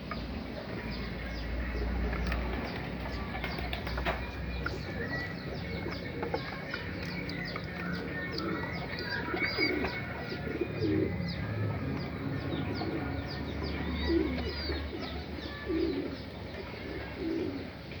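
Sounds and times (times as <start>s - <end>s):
doves cooing: 0.0s - 18.0s.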